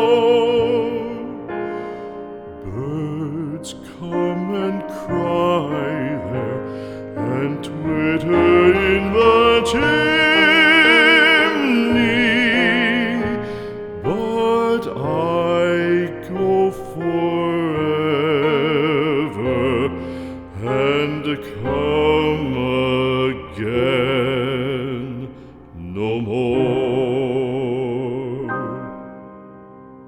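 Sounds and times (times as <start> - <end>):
operatic singing with vibrato: 0.0 - 29.1.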